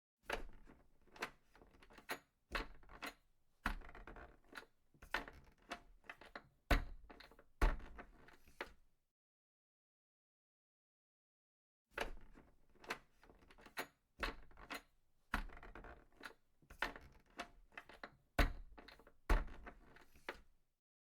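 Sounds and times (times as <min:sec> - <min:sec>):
sharp knocks and clatters: 0:17.8 - 0:19.7.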